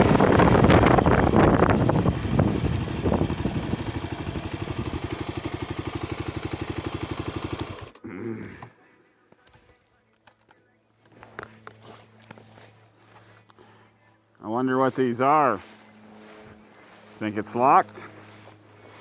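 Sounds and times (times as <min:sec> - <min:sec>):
vehicle engine idling: 0:00.0 - 0:08.9.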